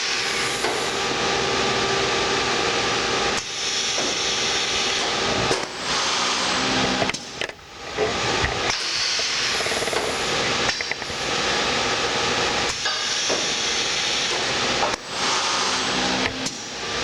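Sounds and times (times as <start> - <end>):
compressed air hissing: 0.0 - 1.0, 3.4 - 7.3, 8.7 - 16.8.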